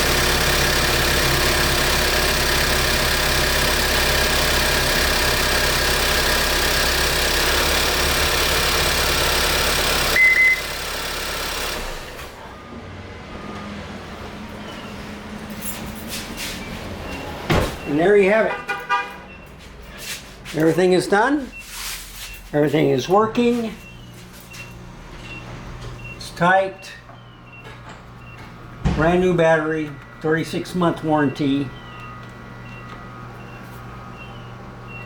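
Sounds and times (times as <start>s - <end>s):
car engine idling: 0.0s - 15.6s
short high beep: 10.2s - 10.7s.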